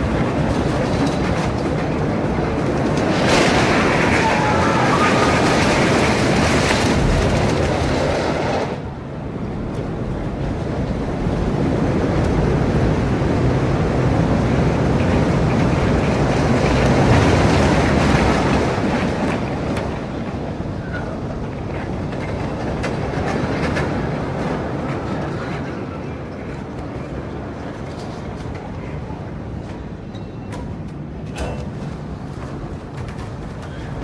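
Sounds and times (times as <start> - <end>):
clattering wheels: 0.0 - 8.9
roller coaster rumbling on track: 0.0 - 34.0.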